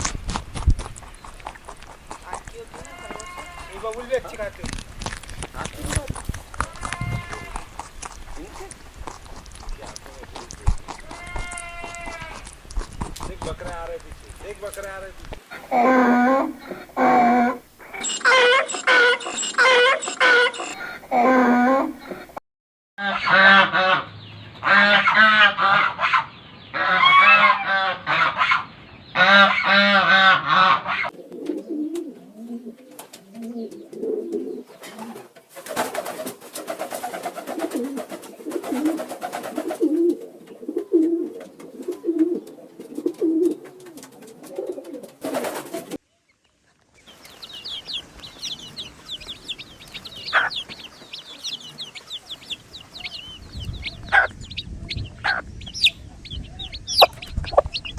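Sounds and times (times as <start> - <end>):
loud bird calls: 1.0 - 4.5, 46.9 - 57.9
high-pitched chirps: 17.9 - 20.8, 47.2 - 57.9
low rhythmic cooing: 31.0 - 35.4, 37.2 - 46.0.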